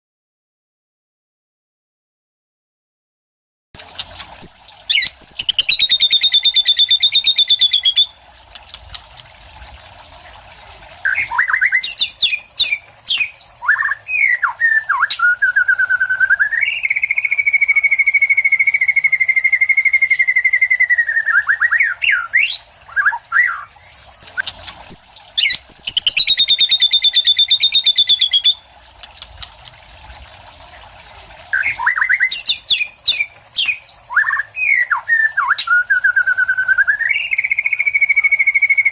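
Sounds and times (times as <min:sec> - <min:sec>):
bird singing varied phrases: 0:03.8 - 0:08.2, 0:11.0 - 0:28.7, 0:31.5 - 0:38.9
fast rattling bird trill: 0:04.0 - 0:08.1, 0:11.1 - 0:15.3, 0:16.4 - 0:28.6, 0:31.6 - 0:35.6
swooping bird whistles: 0:04.4 - 0:08.1, 0:11.1 - 0:28.6, 0:31.6 - 0:38.9
long steady bird whistle: 0:04.4 - 0:08.2, 0:11.0 - 0:28.7, 0:31.5 - 0:38.9.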